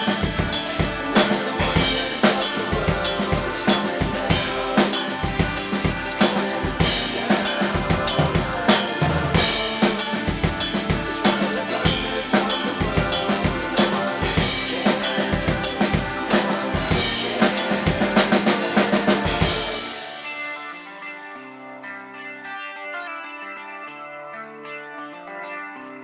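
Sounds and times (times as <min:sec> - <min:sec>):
rock drum kit playing: 0:00.0 - 0:21.0
rock band recording: 0:00.0 - 0:25.9.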